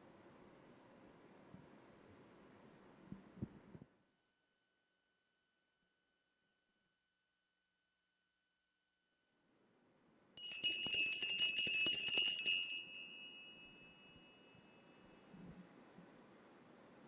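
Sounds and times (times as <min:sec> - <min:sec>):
cluster of small bells shaken: 0:10.4 - 0:14.5.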